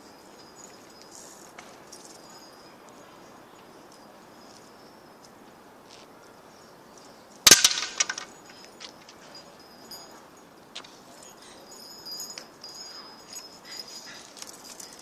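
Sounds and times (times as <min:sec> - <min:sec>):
loud sharp crack: 0:07.5 - 0:08.2.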